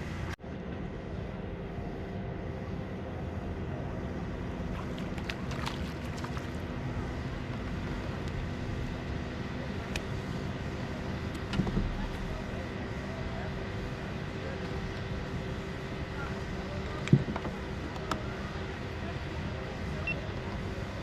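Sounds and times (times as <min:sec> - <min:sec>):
boat motor humming: 0:01.3 - 0:16.8.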